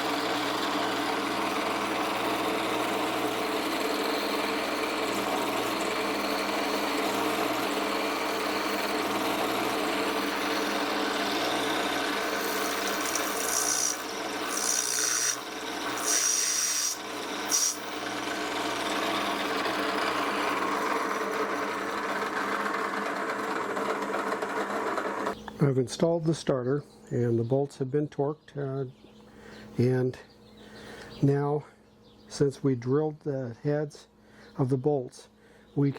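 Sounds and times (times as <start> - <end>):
high-pitched cutting noise: 0.0 - 22.5
power drill boring metal: 0.0 - 25.4.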